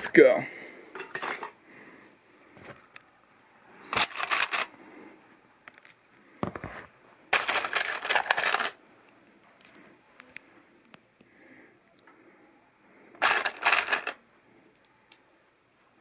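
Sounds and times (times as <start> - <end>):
plastic pieces clicking and rattling: 3.9 - 4.7, 7.3 - 8.8, 13.2 - 14.2.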